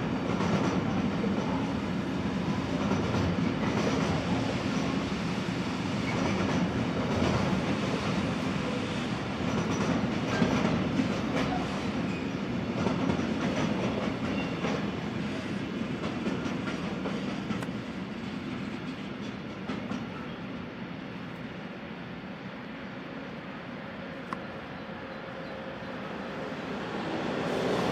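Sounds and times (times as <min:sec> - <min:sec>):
train rumble: 0:00.0 - 0:27.9
train wheels clattering: 0:06.0 - 0:15.0.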